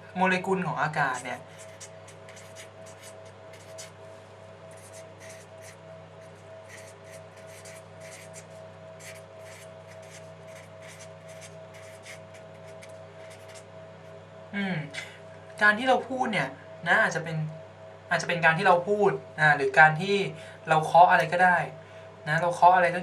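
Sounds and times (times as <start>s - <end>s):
steady electrical hum: 0.0s - 23.0s
pen scratching on paper: 1.5s - 4.0s, 4.7s - 13.7s.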